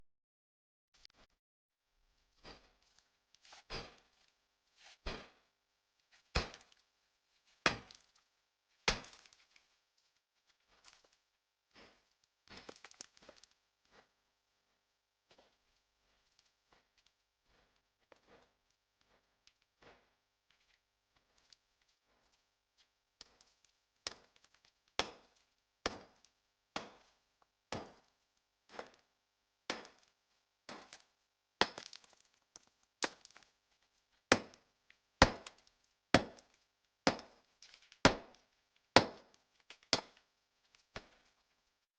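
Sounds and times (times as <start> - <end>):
pickaxe striking brick wall: 3.6 - 4.2, 5.0 - 5.5, 6.3 - 6.8, 7.6 - 8.2, 8.9 - 9.4, 25.0 - 26.2, 26.8 - 27.1, 27.7 - 28.1, 28.7 - 29.0, 29.7 - 30.1, 30.7 - 32.2, 35.2 - 38.4, 39.0 - 40.2.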